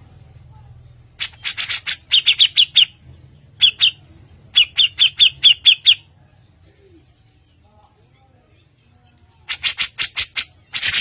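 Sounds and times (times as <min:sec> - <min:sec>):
songbird calling: 0:01.2 - 0:03.0, 0:03.6 - 0:06.1.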